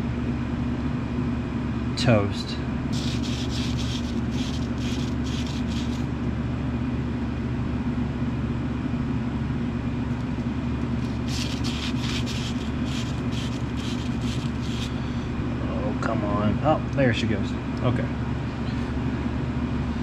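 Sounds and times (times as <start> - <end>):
steady engine drone: 2.5 - 16.4
rhythmic scraping strokes: 3.0 - 6.1, 11.0 - 15.1.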